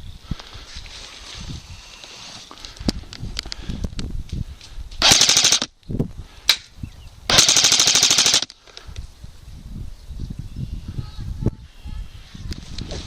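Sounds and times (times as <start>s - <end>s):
airsoft gun full-auto bursts: 5.0s - 5.7s, 7.3s - 8.5s.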